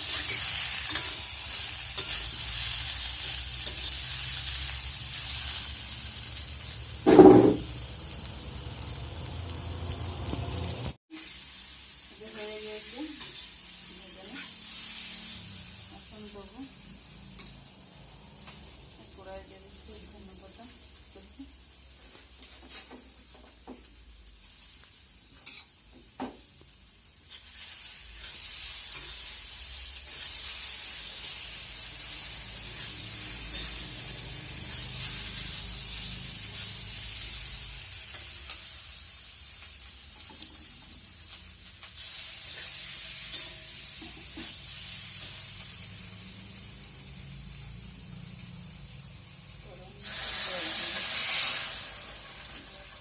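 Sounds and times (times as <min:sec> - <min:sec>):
potatoes sizzling in oil: 0:00.0 - 0:53.0.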